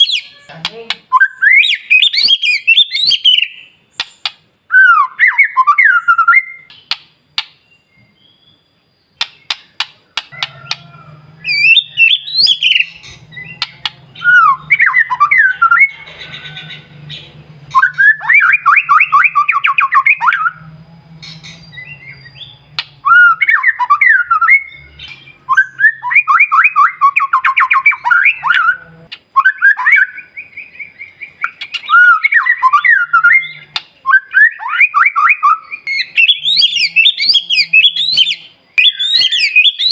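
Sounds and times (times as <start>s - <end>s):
songbird singing whistled trills: 0.0s - 39.9s
sharp clicks: 3.9s - 4.6s, 6.7s - 7.6s, 9.2s - 10.8s, 22.7s - 23.1s.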